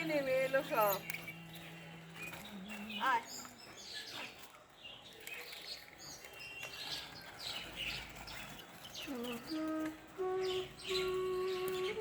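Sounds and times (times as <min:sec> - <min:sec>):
small birds chirping: 0:00.0 - 0:12.0
flute melody: 0:09.0 - 0:12.0.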